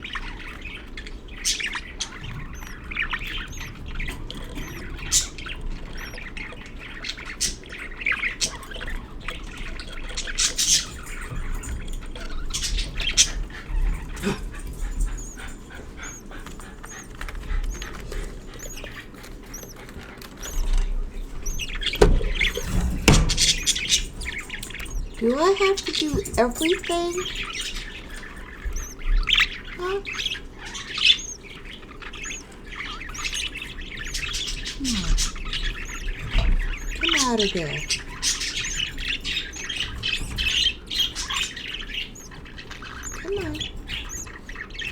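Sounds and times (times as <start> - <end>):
budgerigars chirping: 0.0 - 44.9
louder thuds: 21.4 - 25.0.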